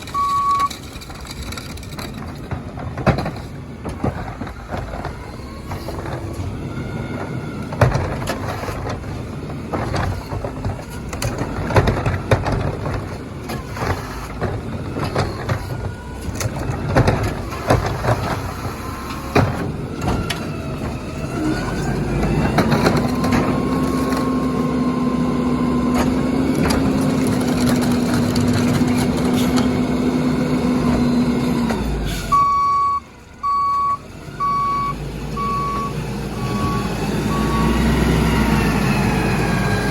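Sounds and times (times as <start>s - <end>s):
garbage truck clanks and knocks: 0.0s - 39.9s
reversing alarm beeping: 0.1s - 0.8s, 32.3s - 38.6s.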